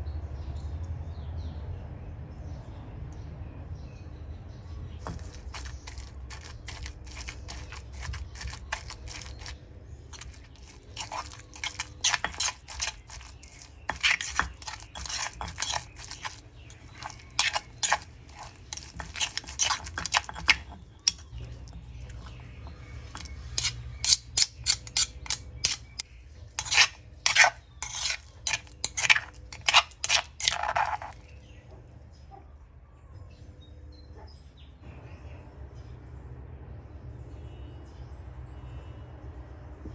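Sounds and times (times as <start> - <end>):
utensils clinking against dishes: 5.0 - 26.0, 26.6 - 31.3.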